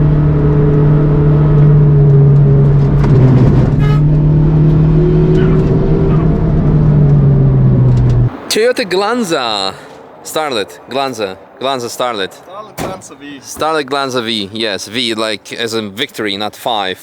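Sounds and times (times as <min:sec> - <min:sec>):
car engine running loudly: 0:00.0 - 0:08.5.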